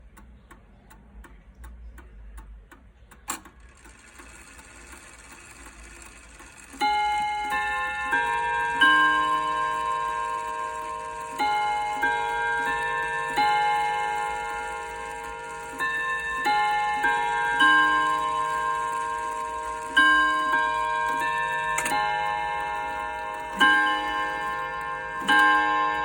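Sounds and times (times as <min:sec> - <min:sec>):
clock click: 0:00.0 - 0:26.0
clock ticking: 0:00.0 - 0:26.0
clock chime bell notes: 0:06.8 - 0:26.0.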